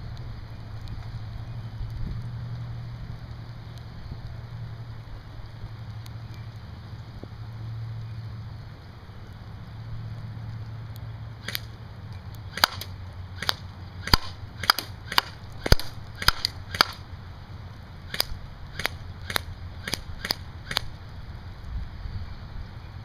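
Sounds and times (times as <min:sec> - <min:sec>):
wind and rain rumble: 0:00.0 - 0:23.0
airsoft rifle shots: 0:11.4 - 0:11.8, 0:12.5 - 0:17.1, 0:18.1 - 0:21.0.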